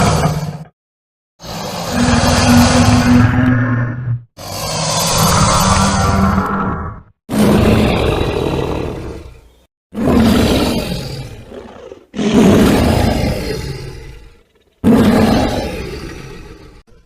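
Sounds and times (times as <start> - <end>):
dinosaur roars: 0.0 - 0.7, 1.4 - 17.0.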